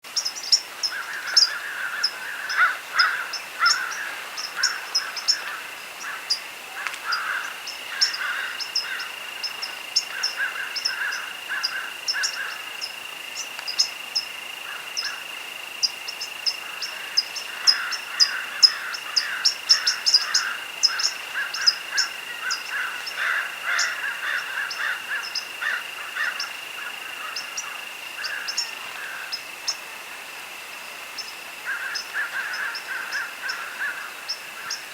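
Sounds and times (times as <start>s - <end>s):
lower rapid chirping calls: 0.1s - 6.5s
crickets trilling: 0.1s - 34.9s.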